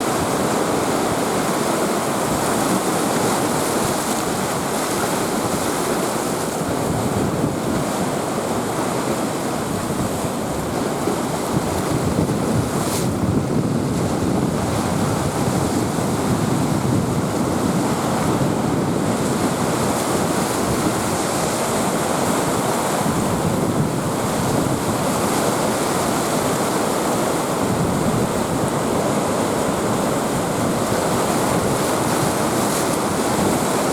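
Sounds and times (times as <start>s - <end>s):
stormy surf: 0.0s - 33.9s
wind buffeting microphone: 2.1s - 8.2s, 9.5s - 33.9s.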